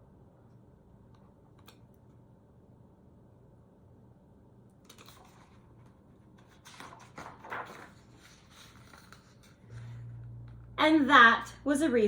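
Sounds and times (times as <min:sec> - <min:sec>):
book pages rustling: 0:04.9 - 0:10.1.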